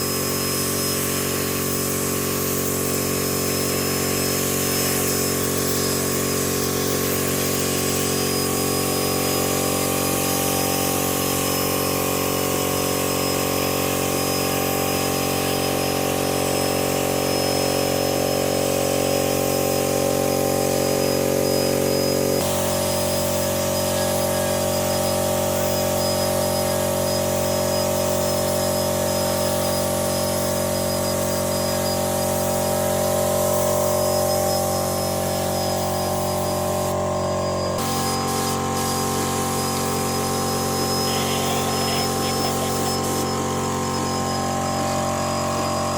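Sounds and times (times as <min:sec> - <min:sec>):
power tool motor running: 0:00.0 - 0:45.9.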